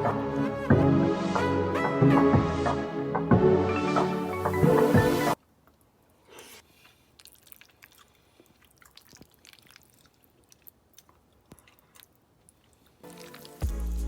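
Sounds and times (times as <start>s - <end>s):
music: 0.0s - 5.4s, 13.0s - 14.0s
close-up chewing: 5.7s - 13.7s.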